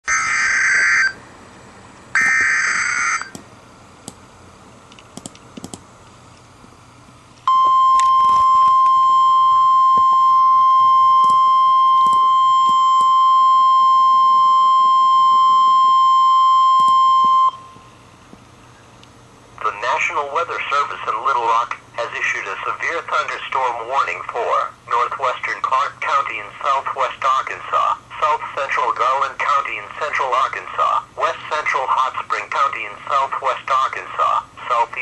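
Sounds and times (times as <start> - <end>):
buzzing data tones: 0.1 - 1.2, 2.1 - 3.4
steady warning alarm tone: 0.1 - 1.2, 2.1 - 3.4, 7.5 - 18.0.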